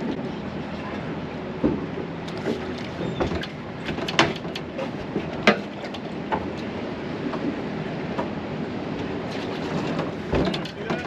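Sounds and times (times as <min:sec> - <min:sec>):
fishing boat noise: 0:00.0 - 0:11.0.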